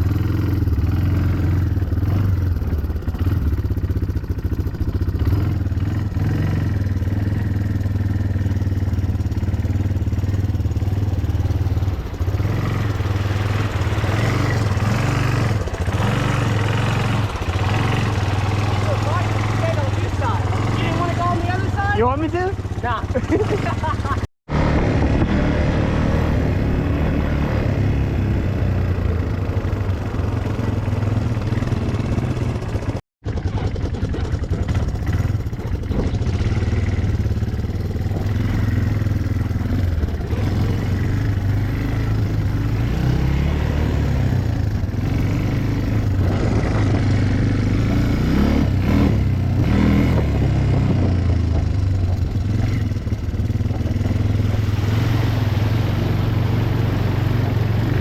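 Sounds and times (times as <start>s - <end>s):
atv engine revving: 0.0s - 58.0s.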